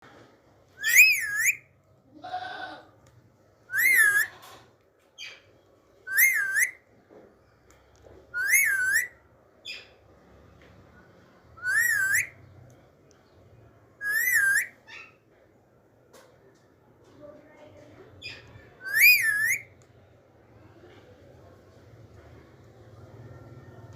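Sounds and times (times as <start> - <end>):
parakeet whistling wavering call: 0.8 - 1.6, 3.7 - 4.3, 6.1 - 6.8, 8.4 - 9.9, 11.6 - 12.4, 14.0 - 15.1, 18.8 - 19.7
faint bird chirps: 0.8 - 1.8, 3.7 - 4.5, 5.2 - 6.8, 7.4 - 10.0, 10.9 - 15.4, 18.1 - 19.8.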